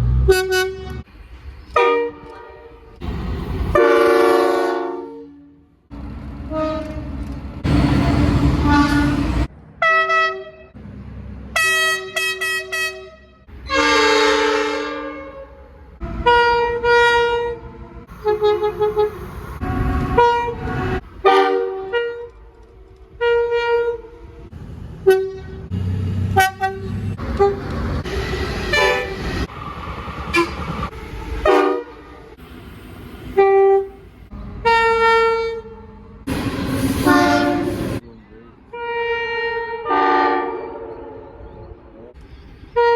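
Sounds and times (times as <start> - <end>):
locomotive horn blasts: 0.0 - 1.1, 1.8 - 2.8, 3.7 - 5.6, 6.5 - 7.1, 8.5 - 10.7, 11.6 - 22.4, 23.2 - 24.2, 25.0 - 29.5, 31.4 - 32.4, 33.4 - 34.0, 34.6 - 36.1, 37.0 - 38.0, 38.7 - 41.8
low train rumble: 0.0 - 42.9.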